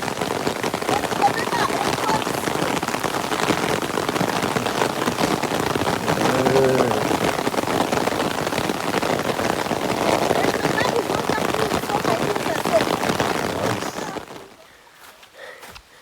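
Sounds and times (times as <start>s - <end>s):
heavy rain falling: 0.0s - 15.6s.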